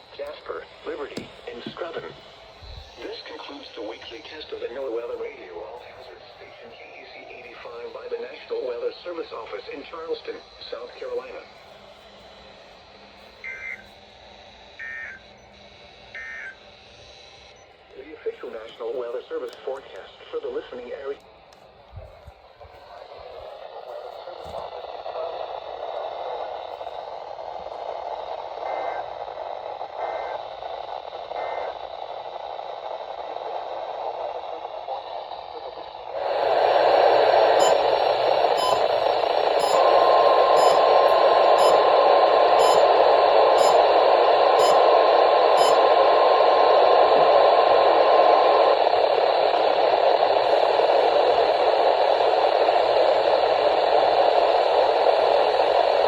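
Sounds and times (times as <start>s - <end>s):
radio static hiss: 0.0s - 14.0s, 14.7s - 16.9s, 17.6s - 27.2s, 27.8s - 56.0s
steady high tone: 36.1s - 56.0s.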